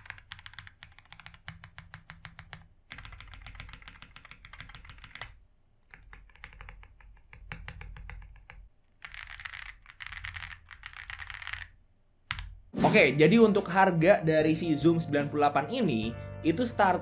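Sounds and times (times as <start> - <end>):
mechanical keyboard typing: 0.0 - 12.5.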